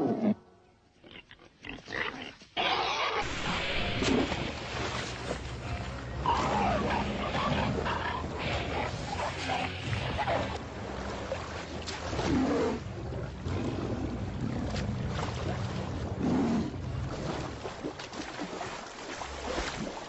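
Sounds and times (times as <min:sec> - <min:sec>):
animals growling: 0:06.2 - 0:10.6.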